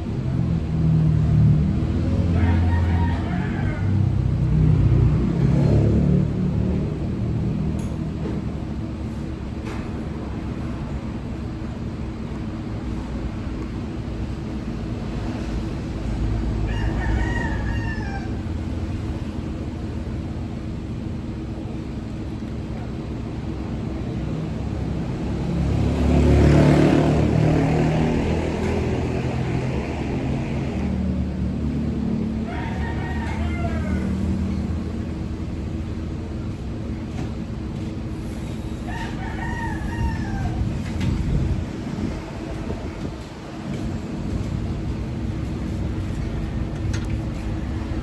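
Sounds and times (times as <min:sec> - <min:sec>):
rooster crowing: 0:02.2 - 0:04.7, 0:16.6 - 0:18.8, 0:30.8 - 0:34.8, 0:38.8 - 0:40.9.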